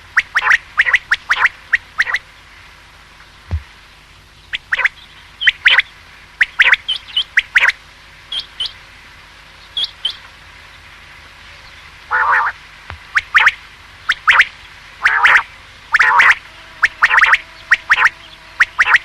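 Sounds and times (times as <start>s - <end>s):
quail calling: 0.0s - 2.2s, 4.6s - 8.8s, 12.1s - 19.0s.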